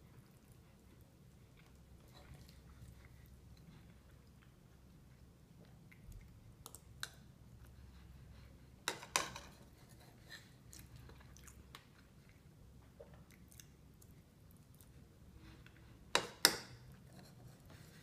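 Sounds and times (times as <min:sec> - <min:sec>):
person chewing food: 0:00.0 - 0:08.6, 0:10.4 - 0:16.1.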